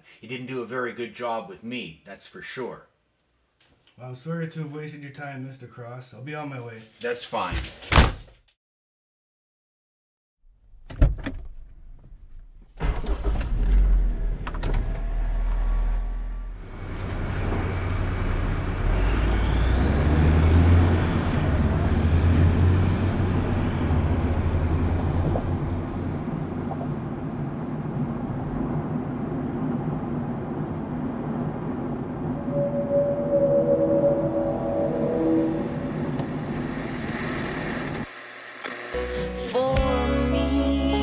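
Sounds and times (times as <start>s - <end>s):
road noise: 12.9s - 38.1s.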